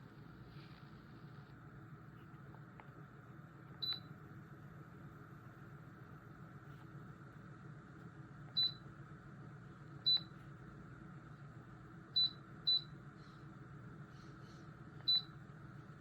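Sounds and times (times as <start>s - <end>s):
electric fan whirring: 0.0s - 16.0s.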